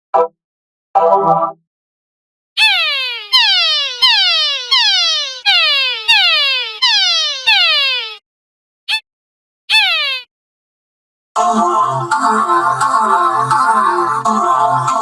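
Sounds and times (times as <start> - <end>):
falling-pitch electronic tone: 2.6 - 8.1.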